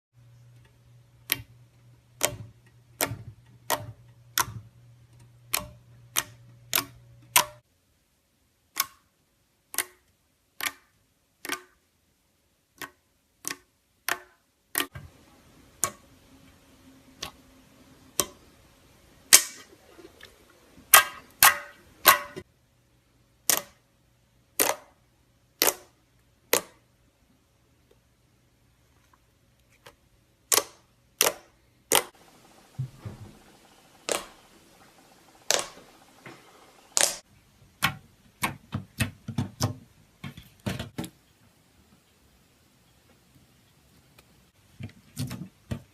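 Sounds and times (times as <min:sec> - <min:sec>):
sharp clicking pops of slime: 0:35.5 - 0:35.9, 0:36.9 - 0:37.2.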